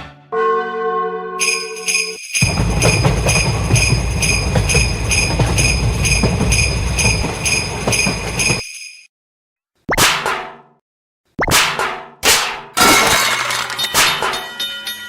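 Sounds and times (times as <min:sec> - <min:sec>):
railroad crossing bell clanging: 0:00.4 - 0:08.6, 0:14.4 - 0:15.0.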